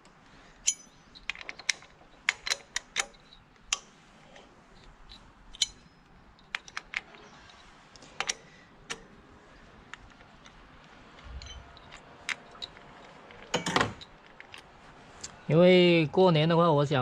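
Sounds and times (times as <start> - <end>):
metal tools clinking: 0.5 - 3.5, 5.0 - 9.1, 10.2 - 14.7
metal strikes ringing: 0.7 - 1.1.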